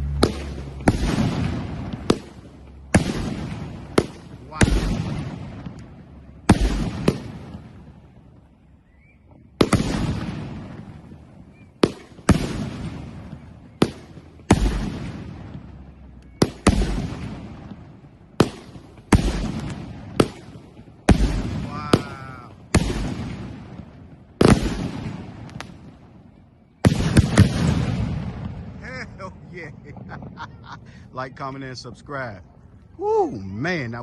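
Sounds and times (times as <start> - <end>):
firework bangs with rumble: 0.0 - 8.2, 9.6 - 26.1, 26.8 - 28.8.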